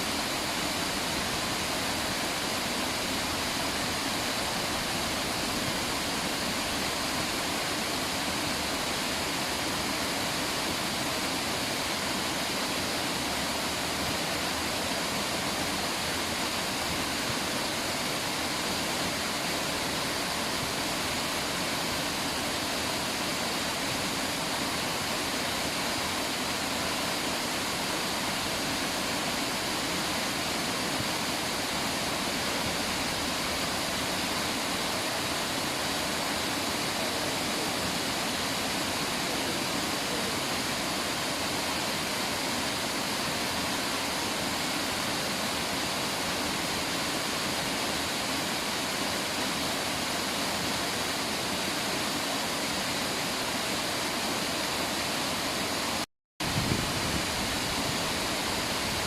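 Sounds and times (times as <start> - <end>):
river water rushing: 0.0 - 59.0.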